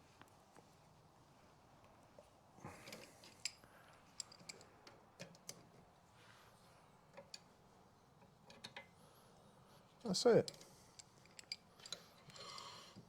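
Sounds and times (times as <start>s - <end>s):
hand tools clicking and tapping: 10.4s - 12.8s.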